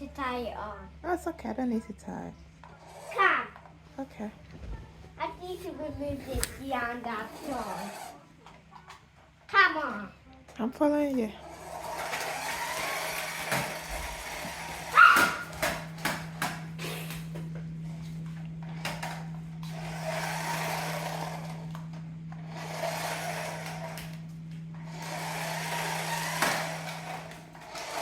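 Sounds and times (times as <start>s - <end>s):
toy car motor whirring: 2.6s - 3.8s, 6.3s - 8.2s, 11.4s - 15.8s, 18.8s - 24.2s, 24.8s - 28.0s.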